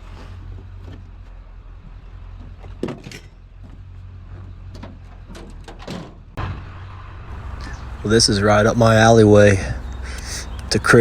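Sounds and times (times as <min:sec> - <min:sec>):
low engine rumble: 0:00.0 - 0:11.0
scrap metal knocks and clanks: 0:02.3 - 0:06.7.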